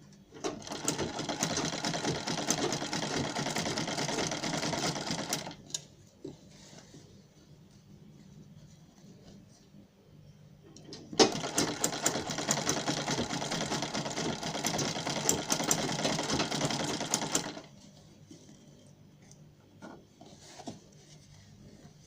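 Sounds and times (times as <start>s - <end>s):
sewing machine stitching: 0.4s - 5.6s, 11.2s - 17.7s.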